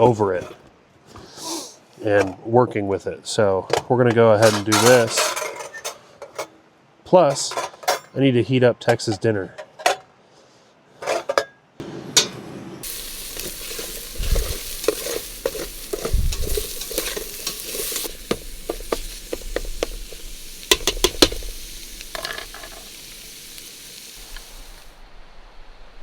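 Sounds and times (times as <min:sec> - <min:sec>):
utensil scraping a pan: 0:04.4 - 0:06.4, 0:12.2 - 0:23.4
food sizzling in a pan: 0:12.8 - 0:25.0.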